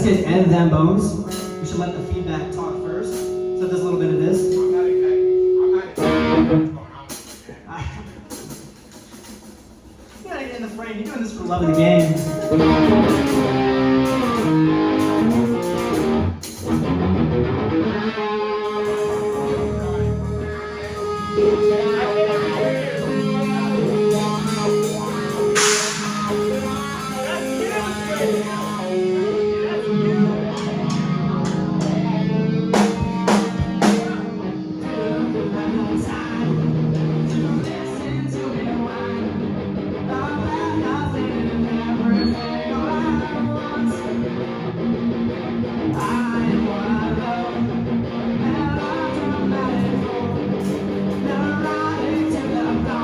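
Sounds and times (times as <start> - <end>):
band music led by guitar: 0.0 - 7.5, 10.8 - 53.0
sharp hits: 18.6 - 29.0, 32.7 - 34.3.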